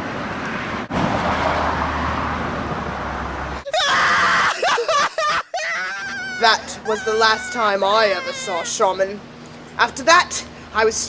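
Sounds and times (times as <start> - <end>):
person screaming: 3.6 - 9.0.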